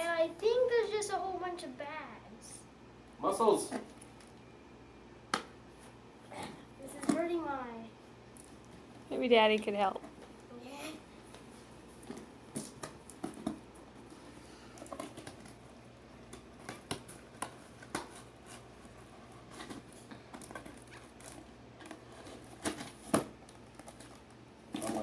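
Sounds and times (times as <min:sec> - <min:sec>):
cardboard box and packaging rustling: 0:11.4 - 0:25.0.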